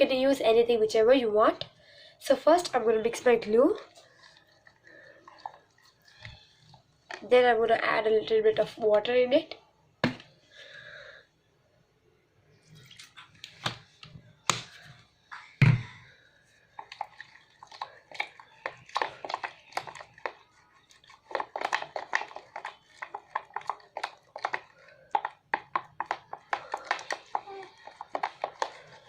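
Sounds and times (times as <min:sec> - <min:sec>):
wet sticky squelching: 0:16.7 - 0:29.0.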